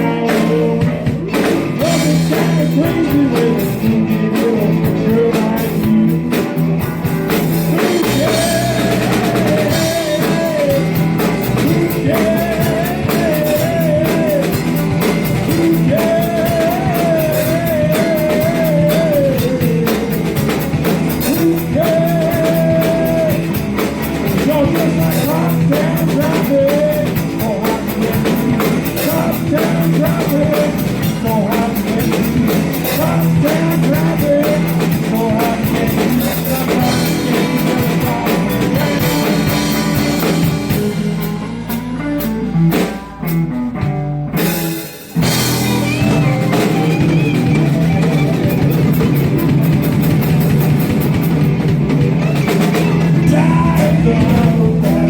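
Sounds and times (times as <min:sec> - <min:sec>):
blues-rock band playing: 0:00.0 - 0:55.0
electric guitar lead line: 0:00.0 - 0:55.0.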